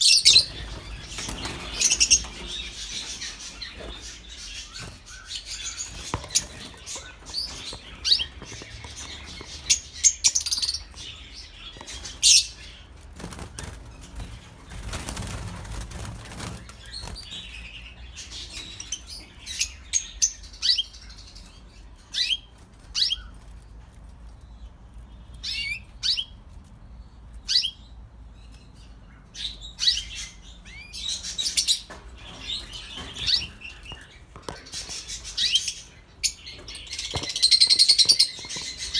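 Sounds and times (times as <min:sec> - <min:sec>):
lovebirds chirping: 0:00.0 - 0:23.6, 0:24.3 - 0:38.9
wings flapping: 0:00.2 - 0:05.2, 0:13.2 - 0:17.3.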